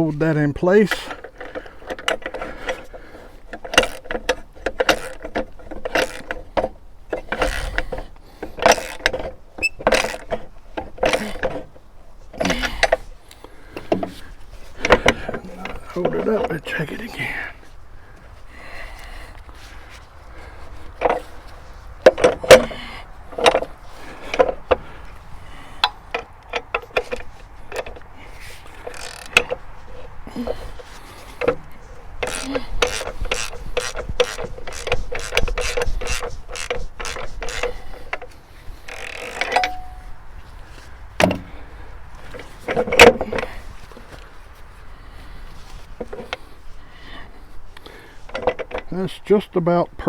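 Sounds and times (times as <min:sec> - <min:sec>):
ratchet wrench clicking: 0:04.7 - 0:05.2, 0:28.8 - 0:29.5, 0:32.2 - 0:37.8
metal clanks and knocks: 0:13.7 - 0:16.6, 0:22.0 - 0:24.9, 0:39.0 - 0:40.1.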